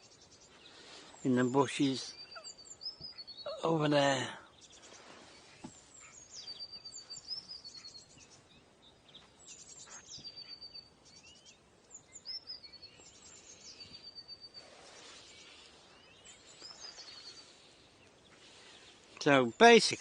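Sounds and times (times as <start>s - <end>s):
songbird trilling and whistling: 1.5s - 3.7s, 4.5s - 8.4s, 9.1s - 17.6s
rustling noise: 4.8s - 6.0s, 14.5s - 19.2s.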